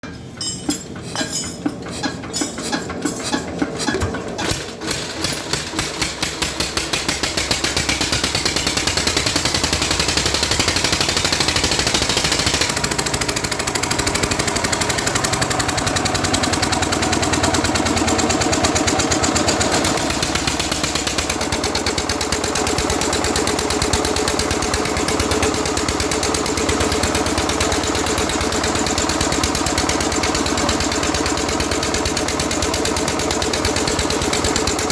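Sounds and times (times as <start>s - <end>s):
diesel engine thudding: 0.0s - 6.8s.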